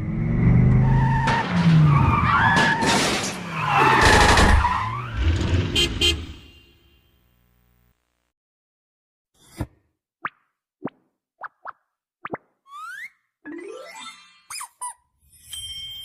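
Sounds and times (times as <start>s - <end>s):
cartoon screeching and skidding squeals: 0.8s - 5.6s, 14.5s - 15.0s.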